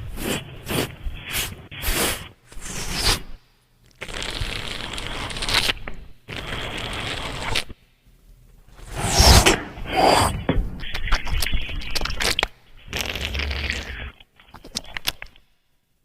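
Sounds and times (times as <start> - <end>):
beatboxing mouth sound effects: 9.1 - 15.2.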